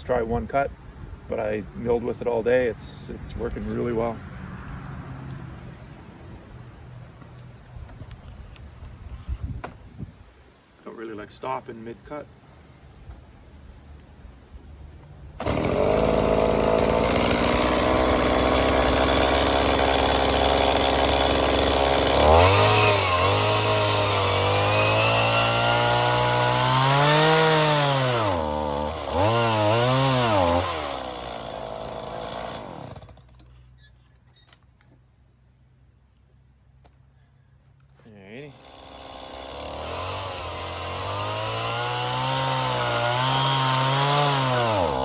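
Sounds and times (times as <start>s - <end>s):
chainsaw ripping along log: 15.4s - 33.6s, 38.4s - 45.0s.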